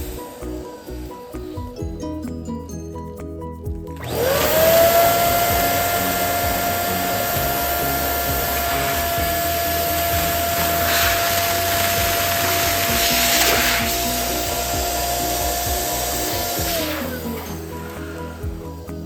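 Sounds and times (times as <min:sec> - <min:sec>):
balloon inflator motor whine: 0:04.0 - 0:18.6.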